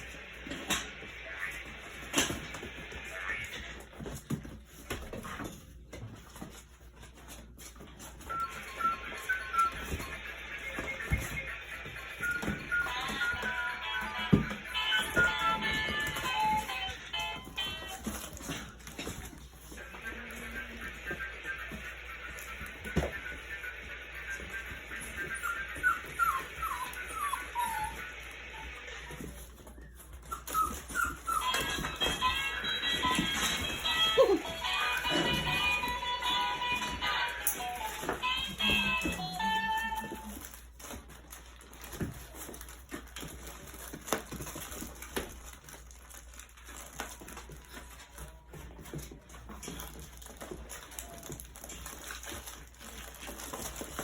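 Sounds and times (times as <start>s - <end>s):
paws and toys scuffling: 0.0s - 54.0s
puppies whimpering: 24.3s - 35.9s.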